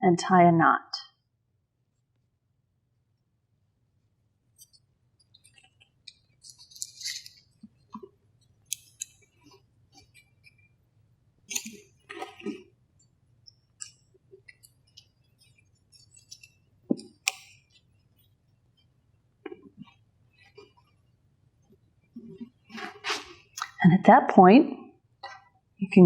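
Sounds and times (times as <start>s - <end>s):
hands rustling thread: 4.5s - 10.8s, 11.5s - 23.6s.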